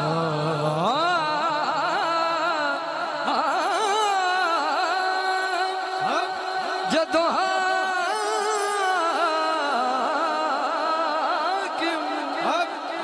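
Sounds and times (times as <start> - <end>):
man singing melismatic melody: 0.0 - 6.2.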